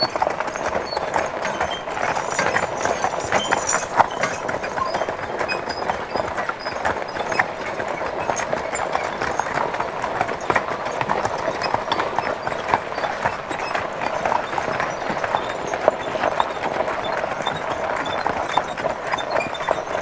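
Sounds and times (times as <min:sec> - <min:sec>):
horse hooves clip-clopping: 0:00.0 - 0:20.0
wagon rattling: 0:00.0 - 0:20.0.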